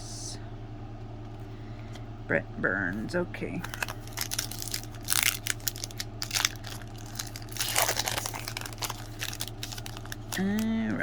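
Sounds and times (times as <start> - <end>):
steady low hum: 0.0 - 11.0
cards and wrapper crinkling: 3.6 - 11.0.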